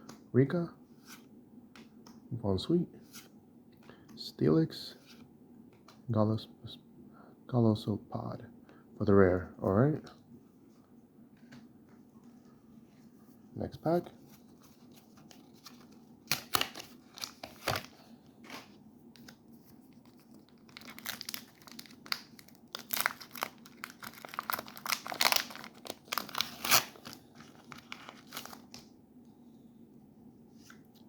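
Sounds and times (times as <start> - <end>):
foil wrapper tearing and crinkling: 20.5 - 28.6.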